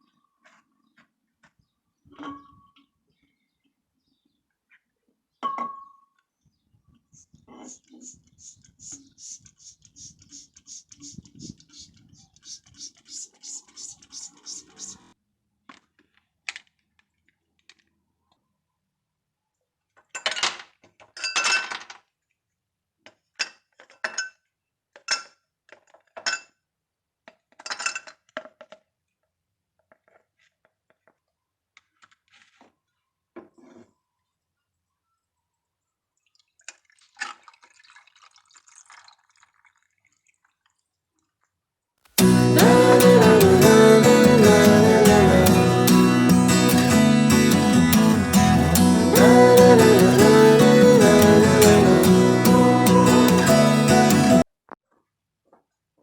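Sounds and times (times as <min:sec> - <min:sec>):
acoustic guitar music: 0:12.8 - 0:15.1, 0:42.2 - 0:54.4.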